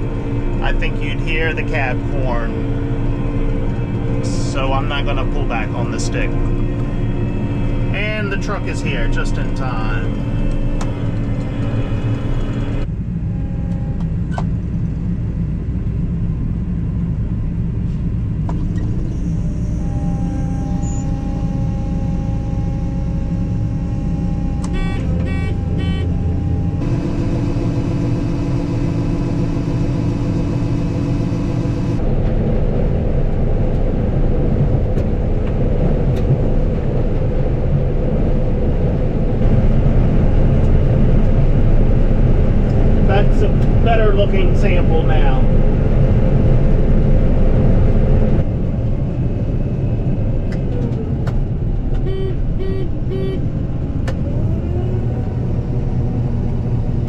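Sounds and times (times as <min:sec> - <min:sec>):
steady tones: 0:00.0 - 0:14.2, 0:18.6 - 0:38.0
combine harvester engine and threshing: 0:00.0 - 0:57.0.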